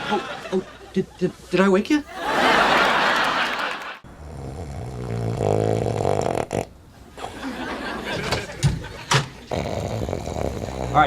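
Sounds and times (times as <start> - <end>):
man snoring loudly: 4.2 - 6.7, 9.5 - 11.0.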